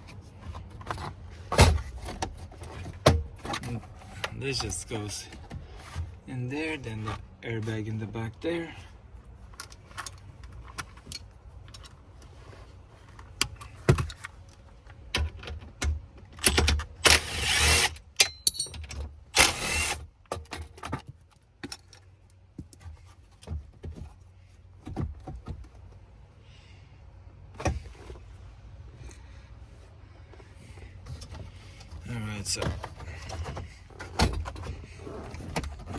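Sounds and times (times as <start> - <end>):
tools and parts clinking: 15.2 - 19.1.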